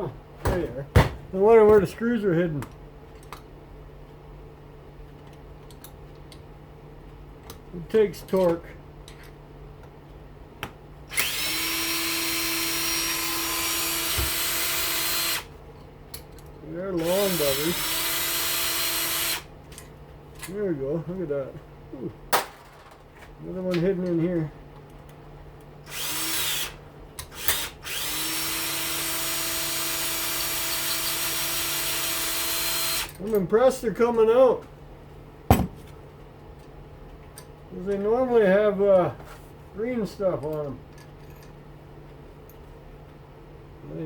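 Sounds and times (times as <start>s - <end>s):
power drill whining: 11.1s - 15.5s, 17.0s - 19.5s, 25.9s - 33.1s.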